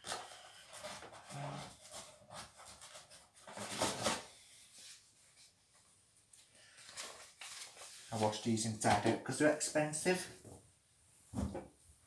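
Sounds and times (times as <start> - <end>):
clothes rustling into washing machine: 11.3 - 11.8.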